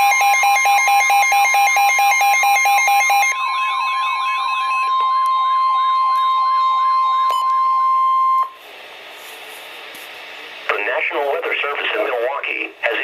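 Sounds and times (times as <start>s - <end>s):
steady high alert tone: 0.0s - 8.6s
warbling alarm: 0.0s - 8.6s
radio hiss: 9.2s - 13.0s.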